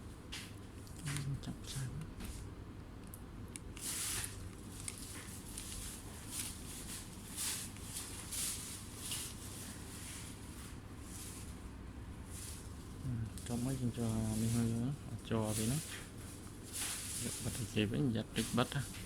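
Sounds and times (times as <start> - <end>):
low steady hum: 0.0 - 19.0
rustling scrapes: 3.9 - 11.6, 12.3 - 19.0.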